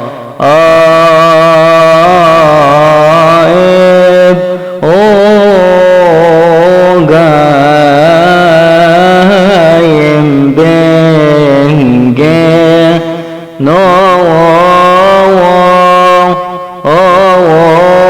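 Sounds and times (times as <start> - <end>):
man chanting a hymn: 0.0 - 18.0
breaths: 4.4 - 4.8, 13.1 - 13.6.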